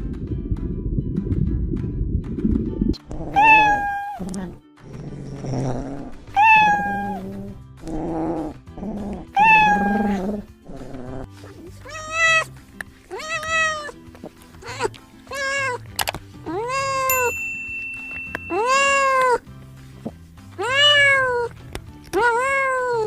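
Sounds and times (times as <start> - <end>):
cat meowing: 3.3 - 4.3, 6.4 - 7.3, 9.4 - 10.2, 11.8 - 12.5, 13.1 - 14.0, 14.6 - 15.8, 16.5 - 17.1, 18.5 - 19.4, 20.6 - 21.5, 22.1 - 23.0.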